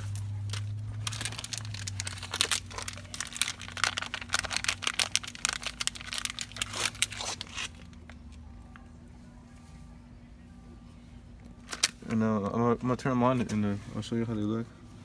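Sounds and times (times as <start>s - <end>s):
small bulbs crinkling and ticking: 0.0s - 8.4s
low steady hum: 0.0s - 15.0s.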